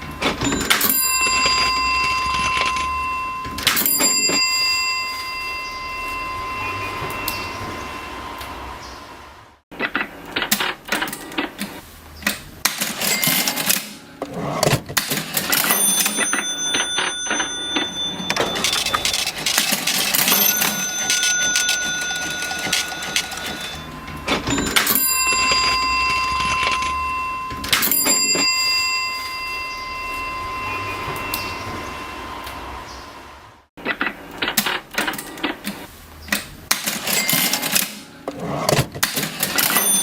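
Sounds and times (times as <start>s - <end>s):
cash register keys clacking: 0.0s - 5.6s, 12.6s - 29.5s, 36.7s - 40.0s
cash register bell ringing: 0.0s - 8.7s, 12.7s - 32.8s, 36.8s - 40.0s.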